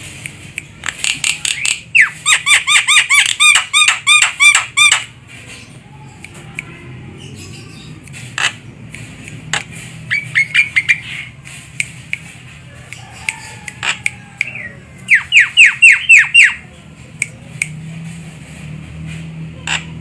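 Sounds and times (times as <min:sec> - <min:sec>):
scattered clicks: 0:00.0 - 0:01.9, 0:08.0 - 0:10.0, 0:11.3 - 0:14.6
myna calling: 0:13.0 - 0:16.7.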